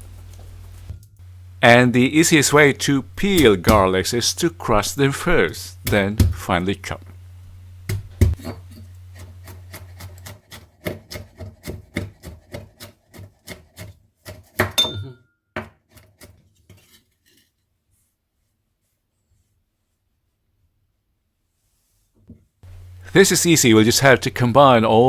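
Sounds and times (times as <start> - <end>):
heavy knife knock: 3.4 - 4.0
knife chopping on cutting board: 3.4 - 4.0, 5.8 - 6.5, 7.9 - 14.8.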